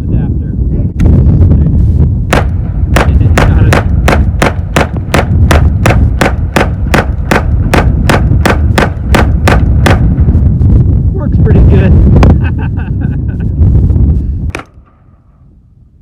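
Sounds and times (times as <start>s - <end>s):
rapid pistol shots: 2.3s - 10.2s, 14.5s - 15.1s.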